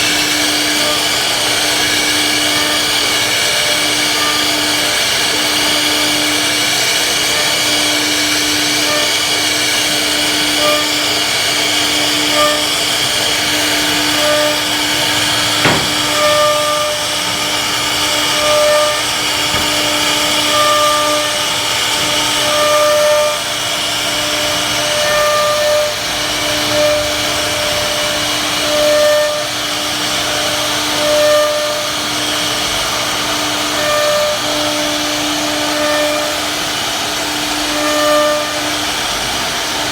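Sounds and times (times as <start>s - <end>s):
router spindle hiss and hum: 0.6s - 31.0s
sharp click: 19.5s - 20.0s.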